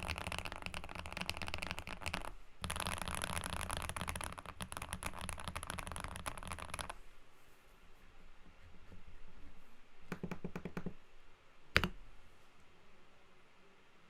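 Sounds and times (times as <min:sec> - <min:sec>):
fast typing on mechanical keyboard: 0:00.0 - 0:07.0.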